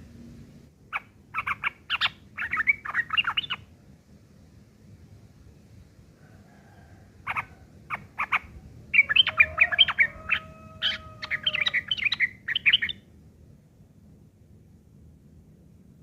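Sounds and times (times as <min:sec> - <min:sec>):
bird harsh chattering: 0:00.9 - 0:03.6, 0:07.3 - 0:13.0.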